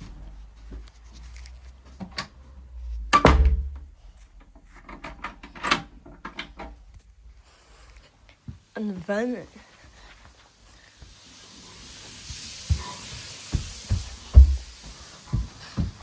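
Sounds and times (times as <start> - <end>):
loud thump: 3.2 - 3.9, 13.6 - 14.8.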